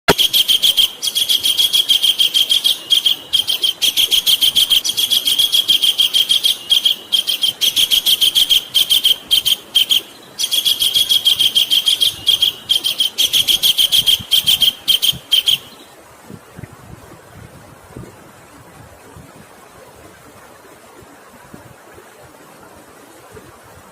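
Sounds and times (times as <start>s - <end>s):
kingfisher calling: 0.1s - 15.9s.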